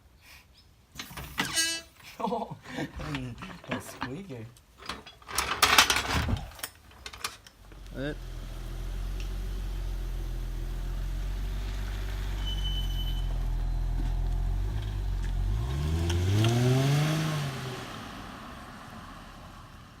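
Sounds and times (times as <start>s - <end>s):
car engine idling and revving: 7.6s - 20.0s.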